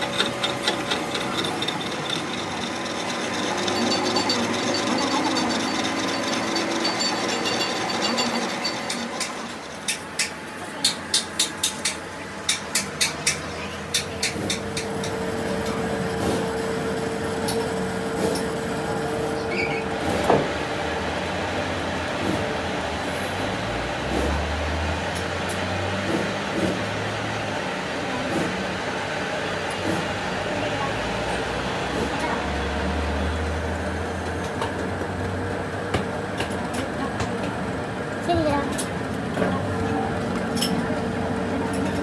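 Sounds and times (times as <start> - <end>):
mechanical running sound: 0.0 - 10.0.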